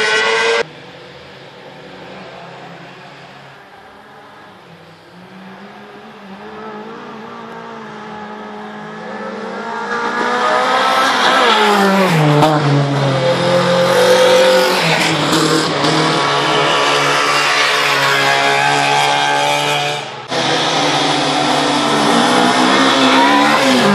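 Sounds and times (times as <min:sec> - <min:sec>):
car engine running hard: 0:12.4 - 0:23.9.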